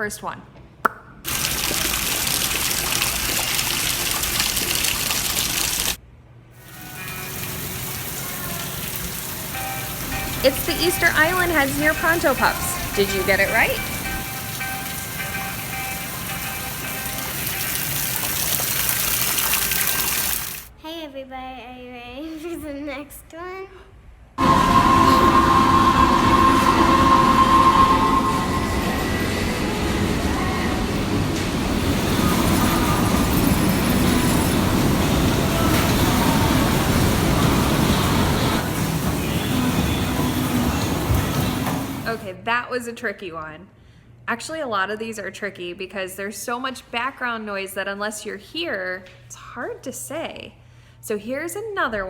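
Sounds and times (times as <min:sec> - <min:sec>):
water gushing from a fountain: 0:01.3 - 0:06.0, 0:06.6 - 0:20.7, 0:31.8 - 0:42.2
faint steady tones: 0:06.7 - 0:17.7
high wheel squeal: 0:06.7 - 0:17.9, 0:24.4 - 0:42.2
ride cars rumbling on rail track: 0:06.7 - 0:18.3, 0:24.4 - 0:42.3.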